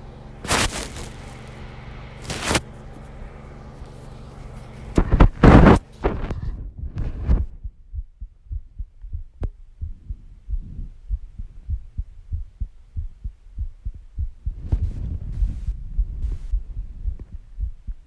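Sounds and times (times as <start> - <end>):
heartbeat thumps: 5.0 - 18.0.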